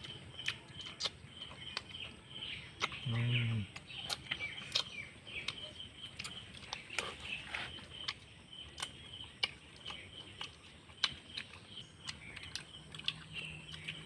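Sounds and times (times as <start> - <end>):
chirping: 0.0 - 14.0
wet mouth smacking while eating: 2.8 - 3.0, 3.7 - 7.3.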